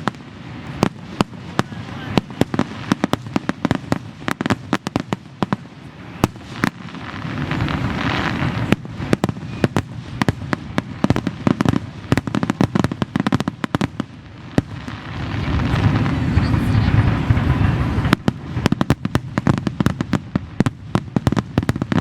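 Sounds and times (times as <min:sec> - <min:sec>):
fireworks bangs: 0:00.0 - 0:22.0
fireworks crackling: 0:00.0 - 0:22.0
low rumble: 0:15.2 - 0:18.7.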